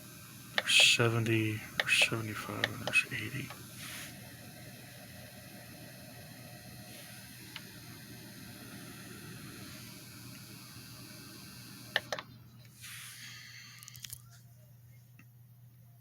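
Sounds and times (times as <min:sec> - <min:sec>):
heater control clicks: 0:00.0 - 0:03.7, 0:07.1 - 0:08.0, 0:11.4 - 0:12.7
heater fan running: 0:00.0 - 0:16.0.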